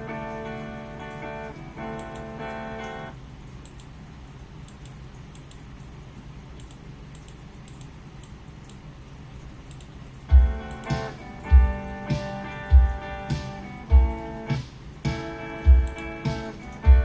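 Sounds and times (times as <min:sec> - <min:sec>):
computer keyboard and mouse clicks: 0:01.9 - 0:02.4, 0:03.5 - 0:04.0, 0:04.6 - 0:05.8, 0:06.5 - 0:08.9, 0:09.6 - 0:11.5, 0:15.7 - 0:16.1.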